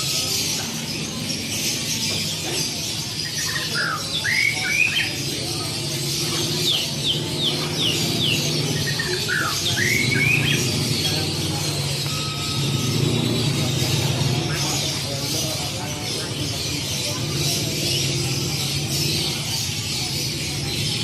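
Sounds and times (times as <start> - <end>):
bird singing whistled phrases: 3.3 - 5.1, 7.4 - 11.0.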